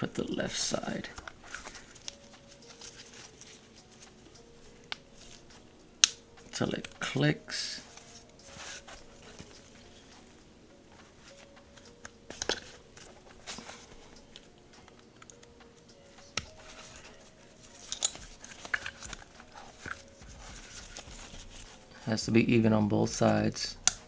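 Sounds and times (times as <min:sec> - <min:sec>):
pistol parts clicking: 0:06.0 - 0:06.2, 0:11.8 - 0:20.1.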